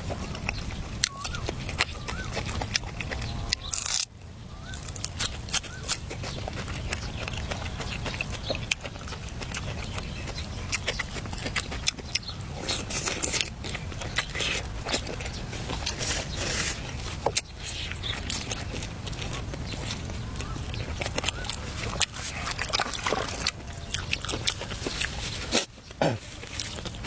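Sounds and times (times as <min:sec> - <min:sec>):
steady low rumble: 0:00.0 - 0:25.6
crunchy chewing: 0:00.0 - 0:27.0.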